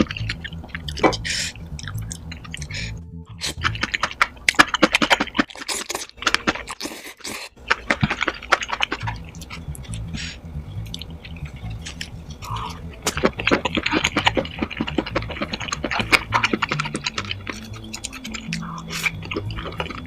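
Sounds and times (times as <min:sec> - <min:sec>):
background music with bass: 0:00.0 - 0:05.4, 0:08.0 - 0:20.0
sped-up chewing and crunching: 0:00.0 - 0:20.0.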